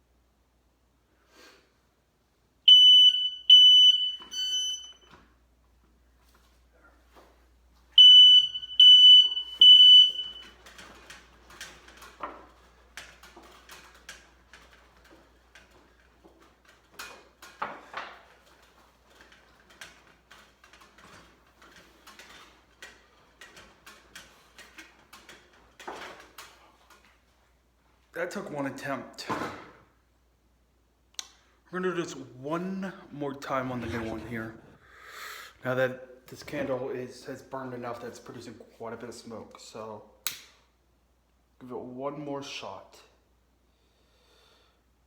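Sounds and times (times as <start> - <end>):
smoke alarm beeps: 2.7 - 5.2, 8.0 - 10.6.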